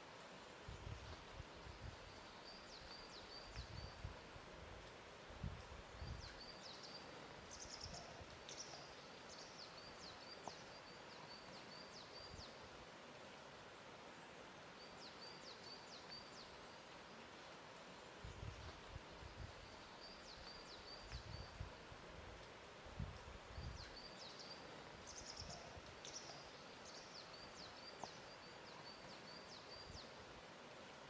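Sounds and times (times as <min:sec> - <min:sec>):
soft steady hiss: 0:00.0 - 0:31.0.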